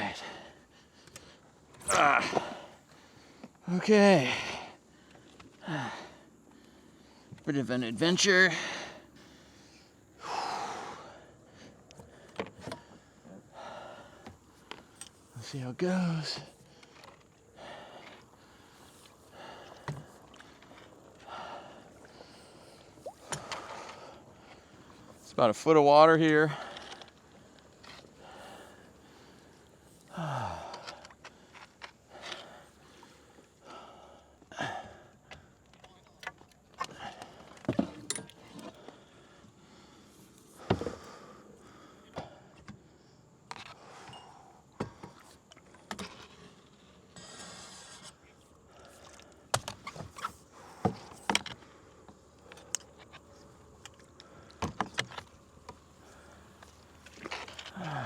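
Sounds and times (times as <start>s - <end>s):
kayak knocks and clunks: 12.0s - 13.1s, 19.4s - 25.3s, 35.8s - 38.8s, 40.6s - 41.4s, 49.5s - 53.0s, 53.8s - 57.5s
water splashes: 19.5s - 25.4s.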